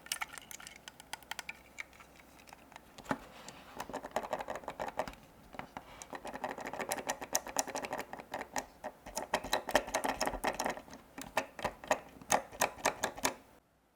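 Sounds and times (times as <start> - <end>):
hard plastic clicks and taps: 6.8 - 13.4.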